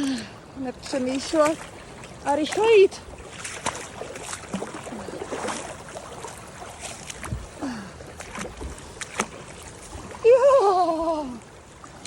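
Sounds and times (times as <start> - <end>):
water sloshing around legs: 0.0 - 12.0.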